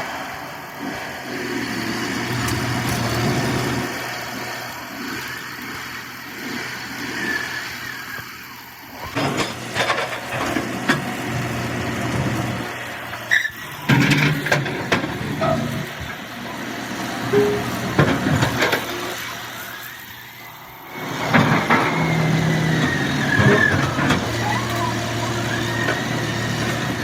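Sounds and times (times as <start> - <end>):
heavy vehicle engine running: 0.0 - 27.0.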